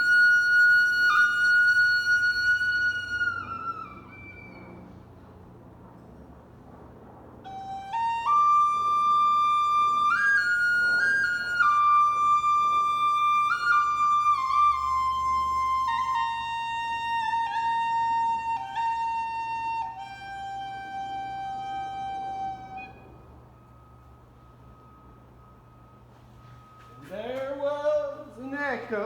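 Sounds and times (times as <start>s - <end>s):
slow flute-like melody: 0.0s - 5.2s, 7.4s - 28.2s.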